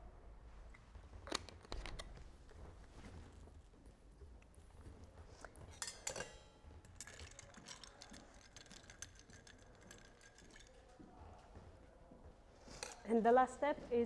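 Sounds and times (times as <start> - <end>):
ice clinking against glass: 5.7 - 11.1.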